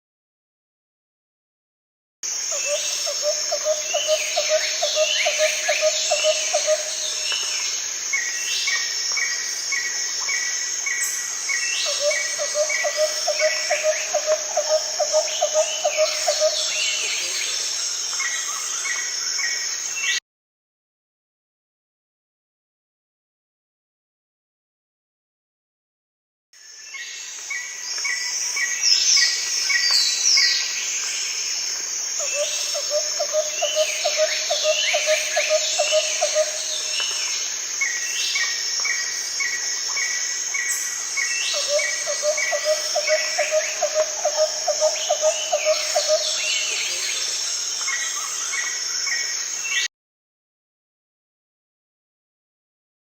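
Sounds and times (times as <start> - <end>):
insect drone: 2.2 - 20.2, 26.6 - 49.9.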